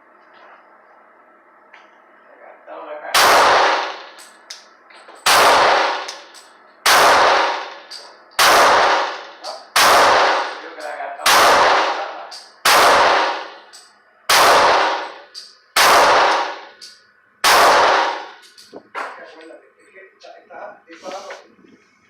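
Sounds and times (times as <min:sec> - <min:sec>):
pistol shots with echo: 0:03.1 - 0:04.3, 0:05.2 - 0:18.7.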